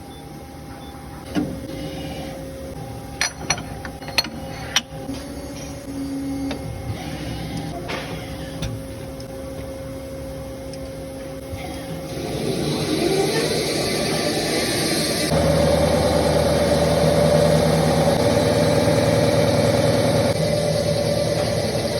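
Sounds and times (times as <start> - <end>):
milling machine whine: 11.4 - 21.9.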